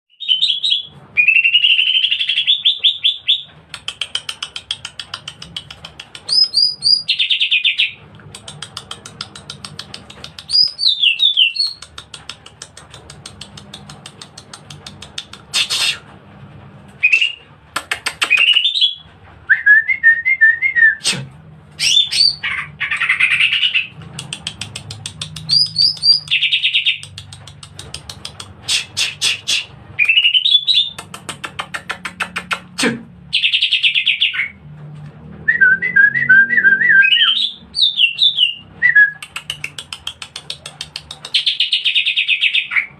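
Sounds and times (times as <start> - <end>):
bird singing varied song: 0.1 - 3.5, 6.3 - 8.0, 10.4 - 11.9, 25.4 - 27.1, 35.8 - 39.2.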